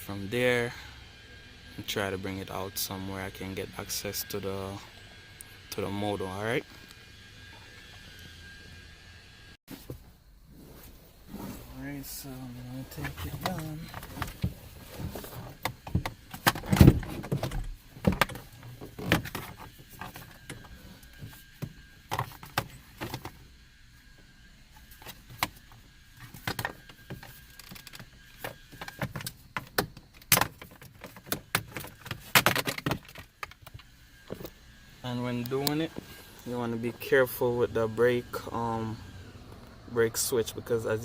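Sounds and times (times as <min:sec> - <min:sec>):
metal and plastic parts rattling: 0:26.2 - 0:34.5.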